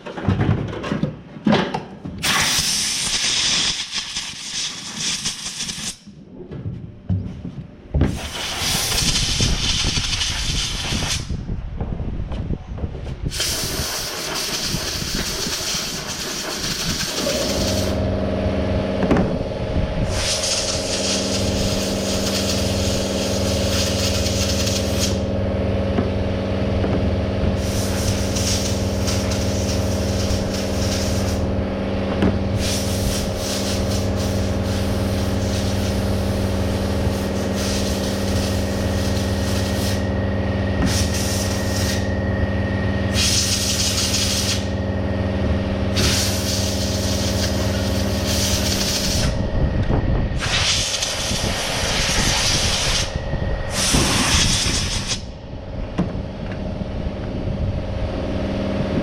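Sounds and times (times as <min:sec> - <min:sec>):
air hissing: 0:02.2 - 0:06.0, 0:08.1 - 0:11.4, 0:13.3 - 0:18.0, 0:20.0 - 0:25.3, 0:27.6 - 0:31.4, 0:32.5 - 0:40.1, 0:40.8 - 0:42.1, 0:43.1 - 0:44.7, 0:45.9 - 0:49.4, 0:50.4 - 0:55.3
machine engine running: 0:13.6 - 0:59.0.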